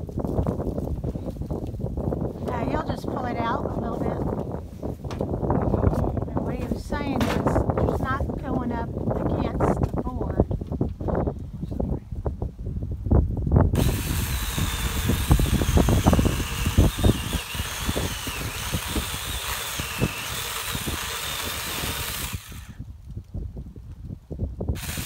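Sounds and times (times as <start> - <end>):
knocks of handling wood: 6.5 - 7.6
power tool whining: 13.8 - 22.8, 24.8 - 25.0.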